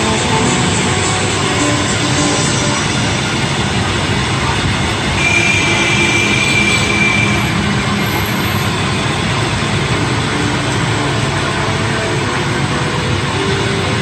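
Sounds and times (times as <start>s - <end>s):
high-pitched squeal: 5.2s - 9.3s.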